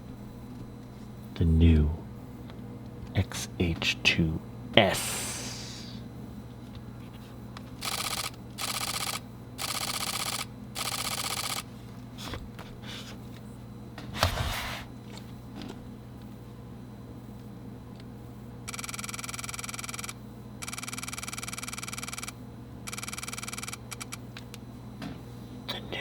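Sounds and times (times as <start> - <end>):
steady low hum: 0.0 - 26.0
camera shutter clicking bursts: 7.8 - 11.6.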